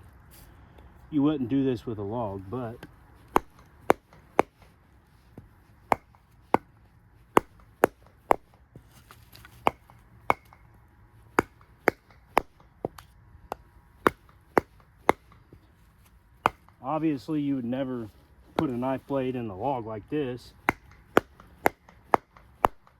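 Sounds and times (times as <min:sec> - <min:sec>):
knife chopping into a log: 0:02.8 - 0:04.7, 0:05.3 - 0:06.7, 0:07.4 - 0:10.6, 0:11.4 - 0:15.6, 0:16.4 - 0:16.8, 0:20.6 - 0:22.9.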